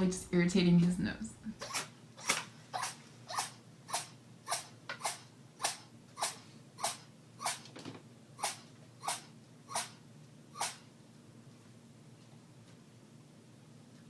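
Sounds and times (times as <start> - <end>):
kitten sneezing: 1.6 - 7.6, 8.4 - 10.0, 10.6 - 10.9.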